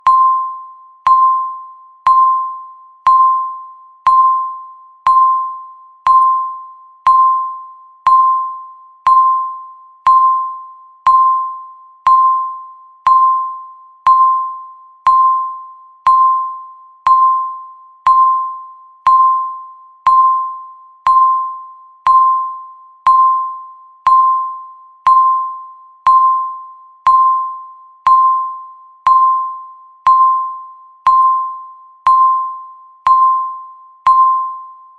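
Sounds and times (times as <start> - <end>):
electronic timer ticks: 30.1 - 34.5.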